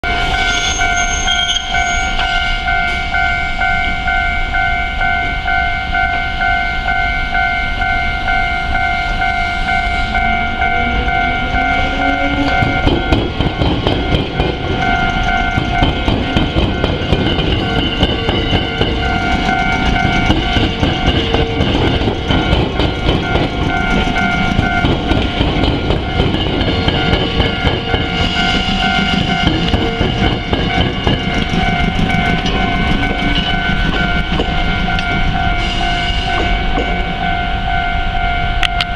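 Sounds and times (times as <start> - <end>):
level crossing bell ringing: 0.0 - 38.9
train wheels clattering: 10.2 - 37.5.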